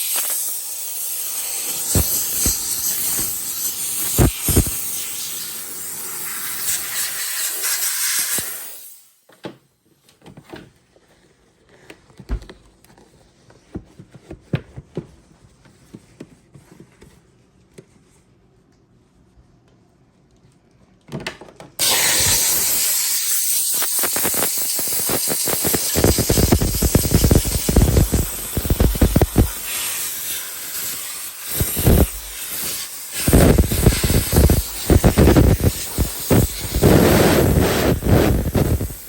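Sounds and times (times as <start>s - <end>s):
steam cleaner hissing: 0.0s - 9.1s, 21.8s - 39.0s.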